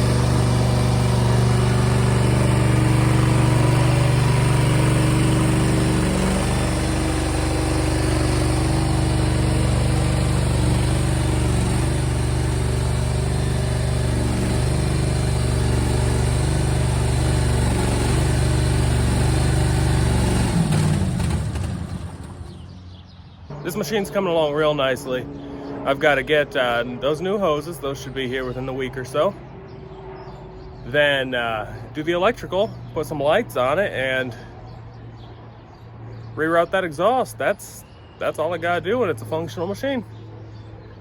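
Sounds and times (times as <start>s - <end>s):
small engine running: 0.0s - 31.9s.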